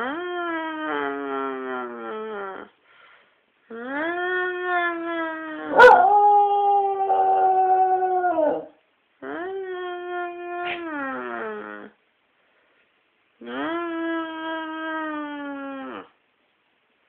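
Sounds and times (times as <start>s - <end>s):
dog howling: 5.6s - 8.8s.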